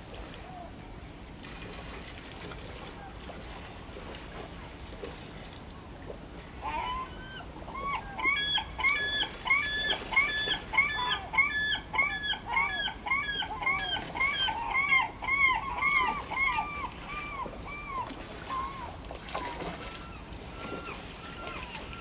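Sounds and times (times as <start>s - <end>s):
bird calling rapidly: 6.6s - 22.0s.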